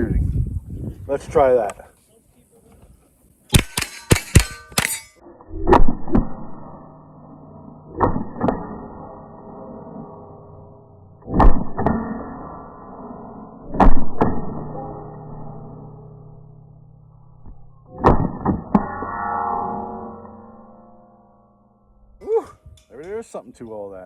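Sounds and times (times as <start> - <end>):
rifle shots: 3.5 - 5.1
steel plate ringing: 3.5 - 5.3, 6.5 - 13.6, 14.2 - 23.4.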